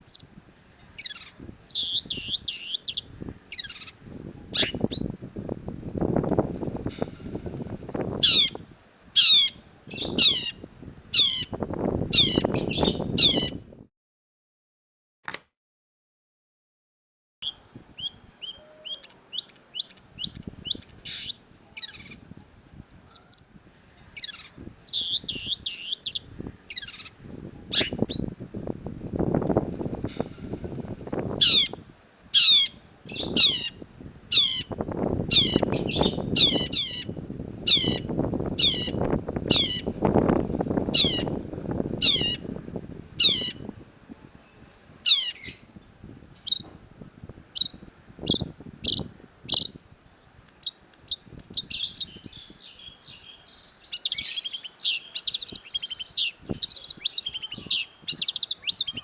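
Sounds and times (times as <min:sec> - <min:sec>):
bird whistling song: 0:00.1 - 0:05.2, 0:08.2 - 0:08.6, 0:09.2 - 0:13.6, 0:17.4 - 0:28.4, 0:32.4 - 0:39.9, 0:40.9 - 0:41.4, 0:42.0 - 0:42.4, 0:43.2 - 0:43.7, 0:45.1 - 0:45.7, 0:46.4 - 0:46.7, 0:47.6 - 0:59.0.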